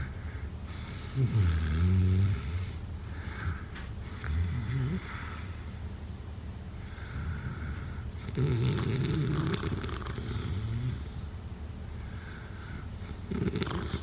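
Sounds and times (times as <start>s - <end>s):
quiet breathing: 0.0s - 5.9s, 6.7s - 8.4s, 11.9s - 14.0s
person snoring: 1.1s - 2.8s.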